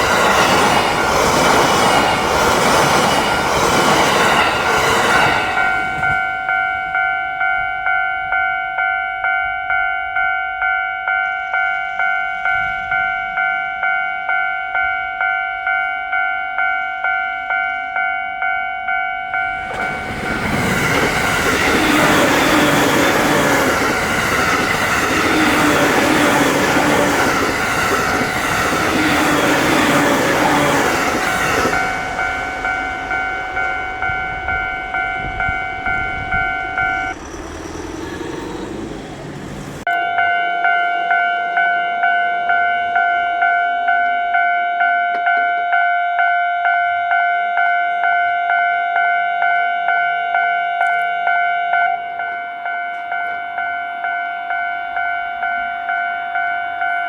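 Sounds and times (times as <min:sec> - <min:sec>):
train wheels running: 0:00.0 - 0:07.0, 0:19.5 - 0:39.9
level crossing alarm ringing: 0:00.0 - 0:37.2, 0:39.8 - 0:57.0.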